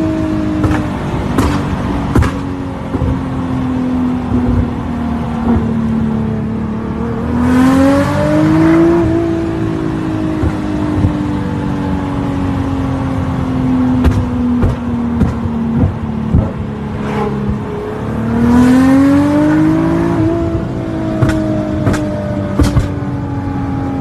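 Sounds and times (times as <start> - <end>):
car engine and exhaust: 0.0 - 24.0
exhaust pops and cracks: 22.6 - 23.0.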